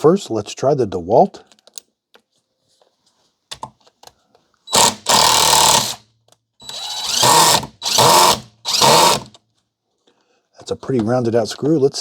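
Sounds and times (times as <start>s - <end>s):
impact driver running: 4.7s - 6.0s, 6.6s - 9.4s.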